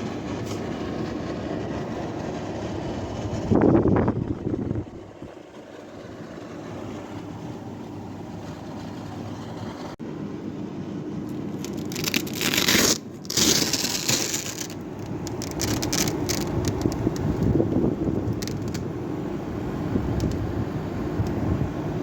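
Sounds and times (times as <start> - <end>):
air conditioner humming: 2.8 - 22.0
loud scraping and rustling: 11.6 - 17.6.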